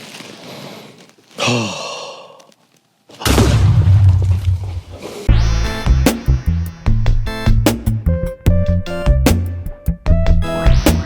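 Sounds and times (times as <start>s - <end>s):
breathy sighing voice: 1.4s - 2.6s
low rumbling boom: 3.3s - 7.1s
music: 5.3s - 11.0s.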